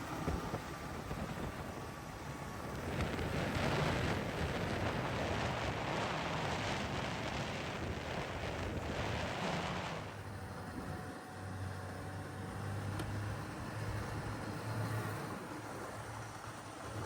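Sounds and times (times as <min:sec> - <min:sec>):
wind buffeting microphone: 0:00.0 - 0:11.5
vehicle engine drone: 0:00.0 - 0:17.0.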